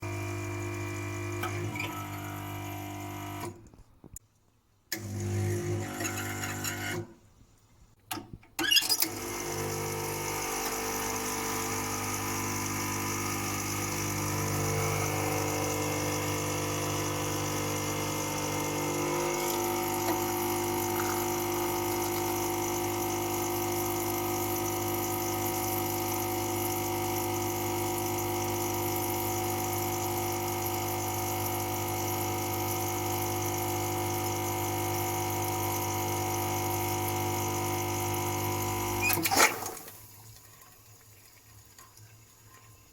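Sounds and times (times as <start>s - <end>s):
espresso machine pump hum: 0.0s - 3.5s, 5.0s - 6.9s, 9.1s - 39.1s.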